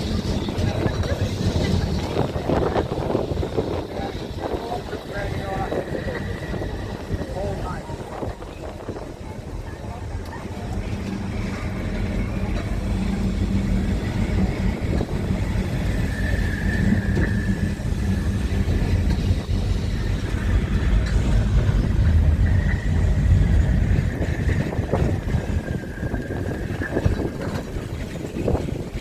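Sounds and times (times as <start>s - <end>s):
tram rumbling on rails: 0.0s - 29.0s
high-pitched squeal: 3.8s - 7.7s, 14.0s - 28.2s.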